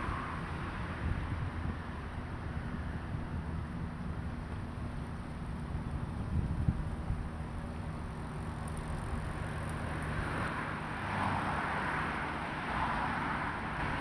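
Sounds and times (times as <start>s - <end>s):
low engine rumble: 0.0s - 11.0s
tyre noise of passing vehicles: 0.0s - 14.0s.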